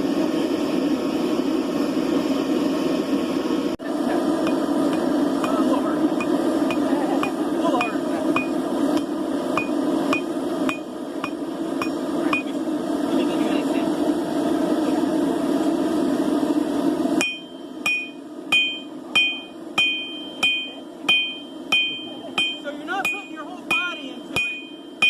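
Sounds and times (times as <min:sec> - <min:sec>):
steady rushing noise: 0:00.0 - 0:25.0
hammer ringing on anvil: 0:17.2 - 0:25.0.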